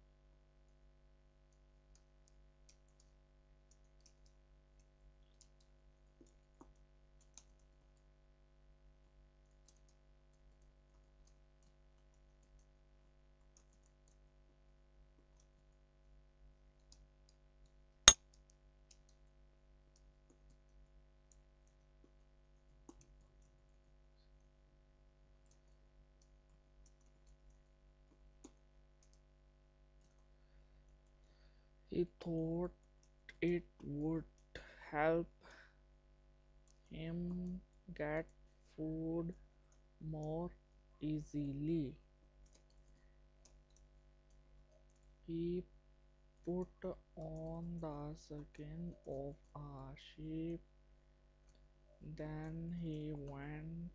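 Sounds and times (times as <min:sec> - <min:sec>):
low electrical hum: 0:00.0 - 0:53.9
keyboard typing: 0:13.4 - 0:14.2, 0:25.4 - 0:29.3, 0:42.4 - 0:45.2.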